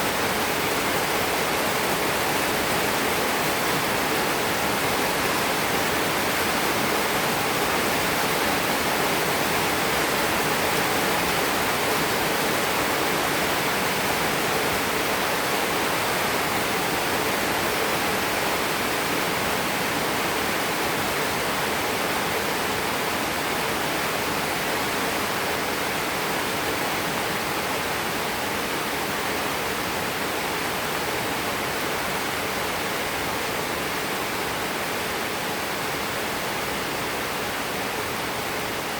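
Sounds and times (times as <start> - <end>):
rain falling and splashing: 0.0 - 29.5.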